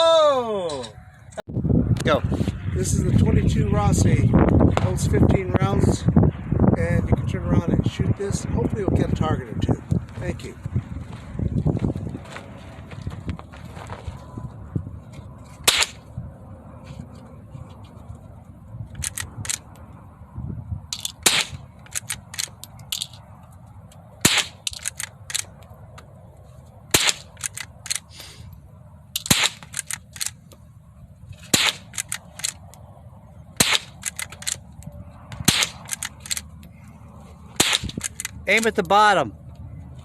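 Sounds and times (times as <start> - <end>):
rifle shots cracking: 15.6 - 16.0, 21.0 - 23.1, 24.2 - 25.5, 26.9 - 28.0, 29.2 - 30.4, 31.5 - 32.6, 33.6 - 34.6, 35.4 - 36.5, 37.6 - 38.4.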